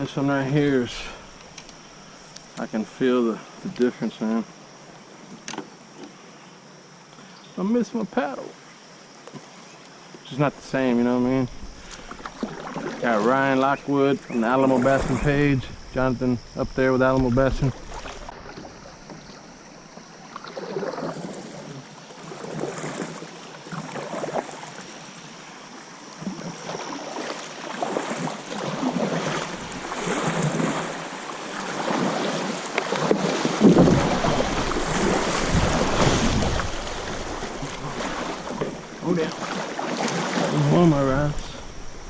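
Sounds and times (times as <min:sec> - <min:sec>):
paddle splashing in river: 0:10.5 - 0:42.0
wind buffeting microphone: 0:33.6 - 0:39.0.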